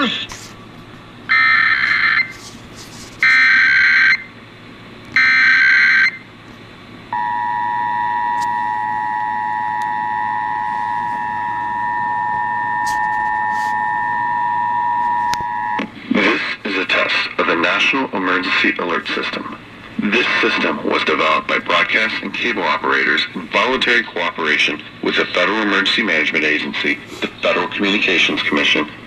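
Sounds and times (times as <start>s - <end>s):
two-tone attention signal: 7.2s - 15.8s.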